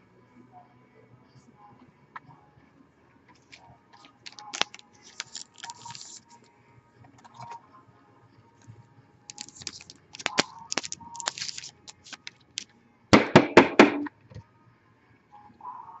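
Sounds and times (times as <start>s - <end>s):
card packaging crinkling: 3.4s - 6.5s, 9.3s - 12.7s.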